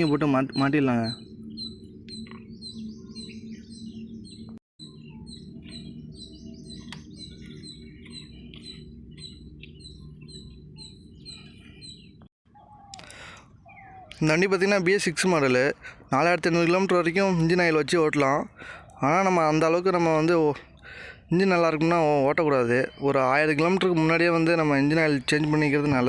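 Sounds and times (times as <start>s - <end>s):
small bird chirping: 0.0s - 14.4s
steady low hum: 0.0s - 22.4s.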